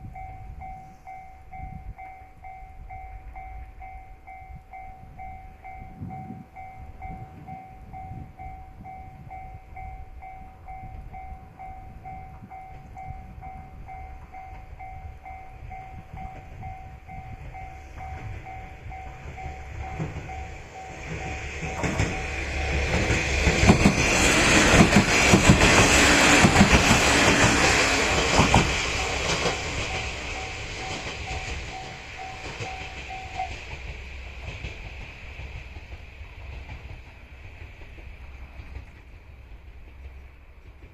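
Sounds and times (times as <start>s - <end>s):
level crossing alarm dings: 0.0s - 23.1s, 29.0s - 33.6s
diesel railcar passing: 0.0s - 40.9s
train wheels clacking over rail joints: 17.5s - 40.9s.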